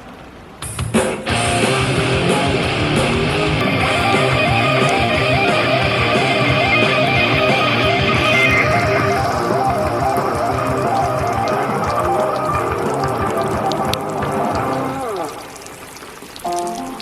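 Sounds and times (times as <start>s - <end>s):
strummed electric guitar music: 1.2s - 15.5s, 16.5s - 17.0s.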